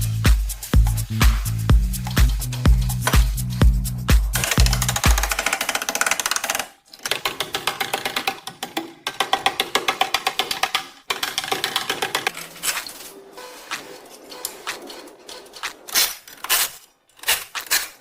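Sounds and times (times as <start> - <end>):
background music: 0.0 - 5.8
sharp percussive clicks: 0.5 - 12.9.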